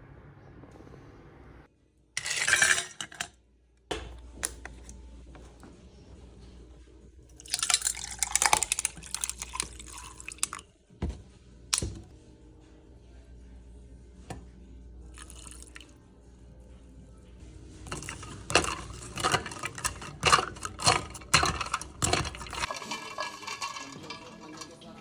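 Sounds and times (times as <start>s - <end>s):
dishes and utensils clinking: 2.2s - 3.3s, 7.4s - 11.2s, 11.8s - 12.1s, 17.8s - 25.0s.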